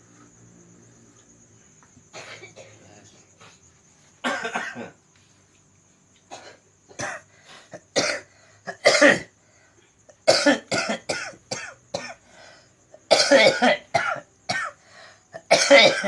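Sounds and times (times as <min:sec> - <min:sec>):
person coughing: 0:02.2 - 0:02.8, 0:04.2 - 0:05.0, 0:06.3 - 0:07.2, 0:07.8 - 0:09.3, 0:10.3 - 0:12.2, 0:13.1 - 0:14.8, 0:15.4 - 0:16.0.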